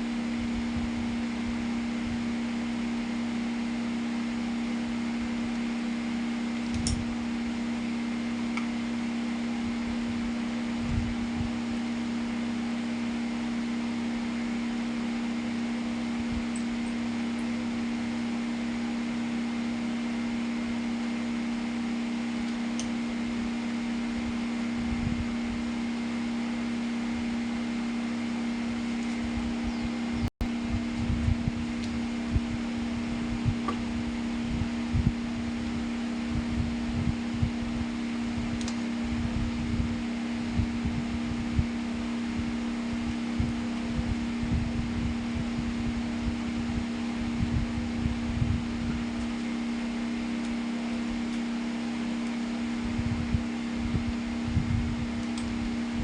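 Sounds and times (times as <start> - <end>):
fan motor humming: 0.0 - 56.0
wind buffeting microphone: 30.7 - 33.7, 43.4 - 49.0, 52.9 - 55.2.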